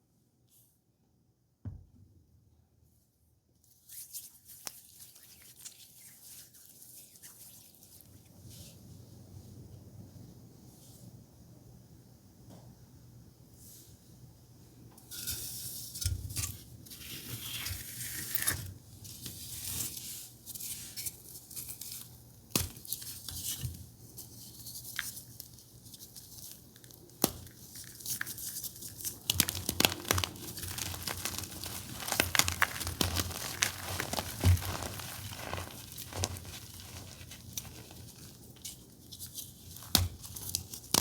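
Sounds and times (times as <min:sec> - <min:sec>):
chalk crumbling and crackling: 0:03.8 - 0:08.3, 0:16.9 - 0:41.0.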